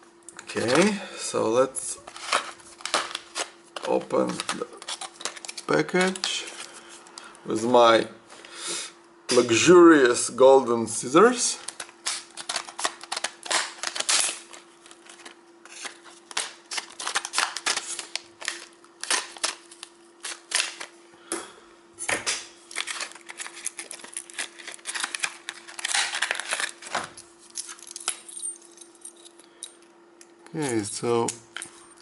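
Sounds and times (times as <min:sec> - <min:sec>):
faint hum: 0:00.0 - 0:32.0
plastic crinkling: 0:11.6 - 0:20.9, 0:22.7 - 0:27.2.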